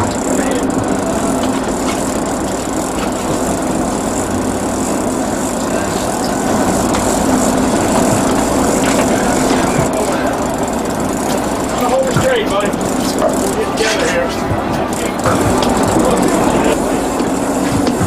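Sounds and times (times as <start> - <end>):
boat engine humming: 0.0 - 18.0.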